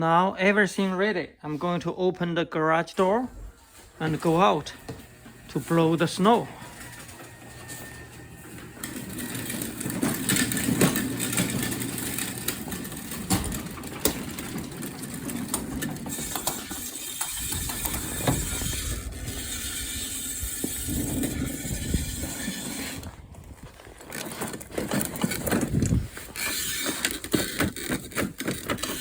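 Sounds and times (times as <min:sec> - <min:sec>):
garage door opener rattling: 0:04.0 - 0:23.2, 0:24.2 - 0:29.0
sharp clicks and knocks: 0:08.8 - 0:18.7.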